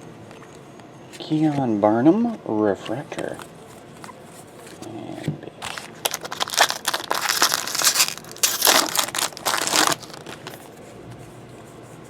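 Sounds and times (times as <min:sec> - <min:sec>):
foil wrapper crinkling: 0:05.6 - 0:10.7.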